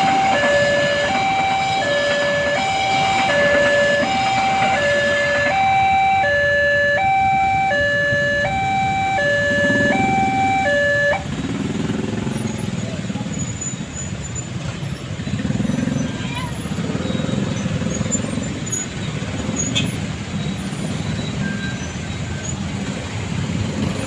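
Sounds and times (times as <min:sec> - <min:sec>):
level crossing two-tone alarm: 0:00.0 - 0:11.3.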